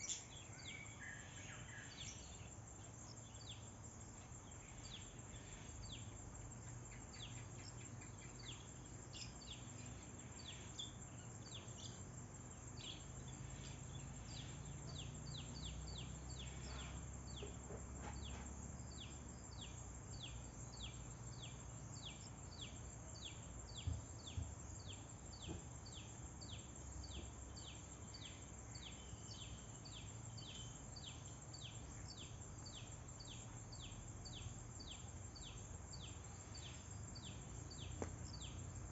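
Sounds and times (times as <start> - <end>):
bird chirping: 0.0 - 38.7.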